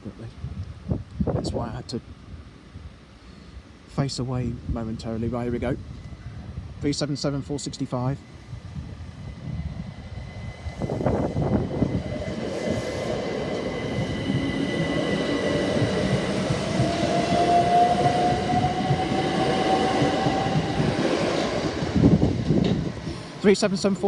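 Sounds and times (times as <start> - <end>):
electric train accelerating: 7.2 - 24.0
wheels rumbling on rails: 8.2 - 24.0.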